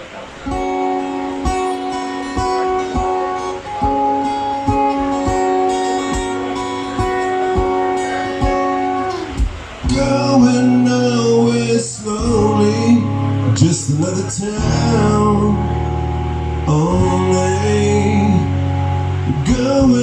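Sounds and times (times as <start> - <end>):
acoustic guitar strumming: 0.0 - 20.0
live band playing: 0.0 - 20.0
person singing: 7.0 - 16.0, 16.6 - 20.0.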